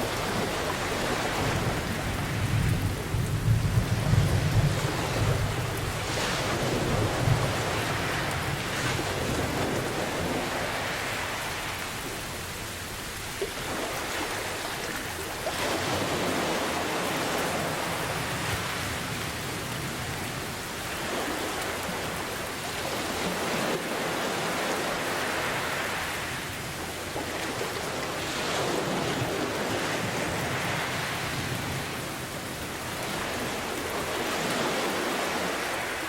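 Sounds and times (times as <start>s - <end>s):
heavy rain: 0.0s - 36.0s
ocean waves: 0.0s - 36.0s
low rumble of thunder: 0.1s - 10.7s.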